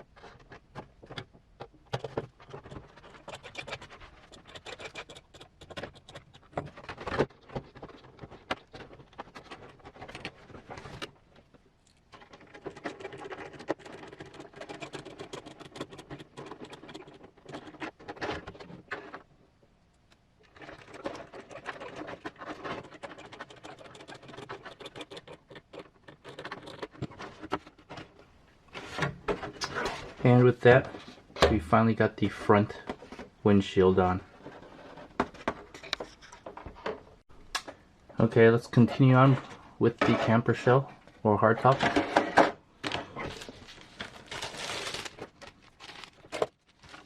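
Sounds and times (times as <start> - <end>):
hard plastic parts clicking and tapping: 0.0 - 19.3.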